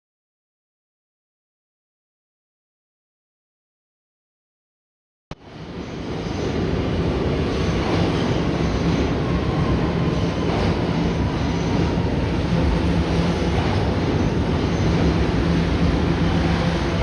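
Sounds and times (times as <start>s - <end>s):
subway train wheels and motors rumbling: 5.3s - 17.0s.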